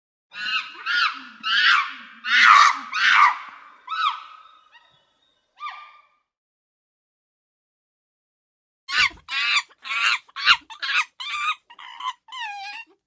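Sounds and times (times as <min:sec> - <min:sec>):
monkey screeching calls: 0:00.3 - 0:05.0, 0:08.9 - 0:13.0.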